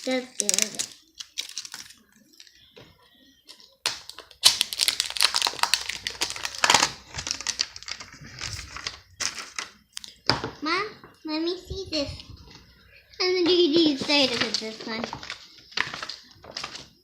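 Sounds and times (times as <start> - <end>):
candy packaging clicking and crinkling: 0.0 - 2.7, 3.4 - 10.5, 13.4 - 17.0.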